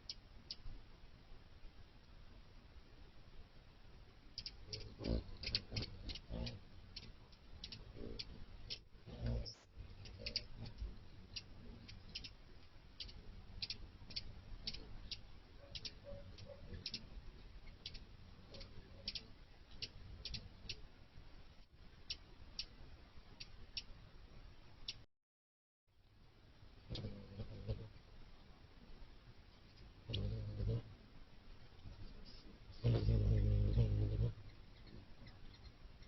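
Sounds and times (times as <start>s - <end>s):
faint low hum: 0.0s - 25.0s, 25.9s - 36.0s
hummingbird chip calls: 4.4s - 12.4s, 13.0s - 20.9s, 26.9s - 27.9s, 30.1s - 30.8s, 32.3s - 36.0s.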